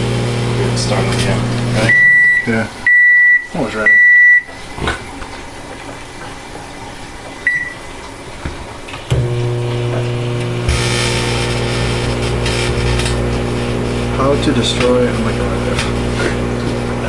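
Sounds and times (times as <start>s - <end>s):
microwave oven humming: 0.0s - 4.6s, 7.3s - 17.0s
microwave keypad beep: 1.8s - 4.5s, 7.4s - 7.8s
metal arcing hissing buzz: 9.1s - 17.0s.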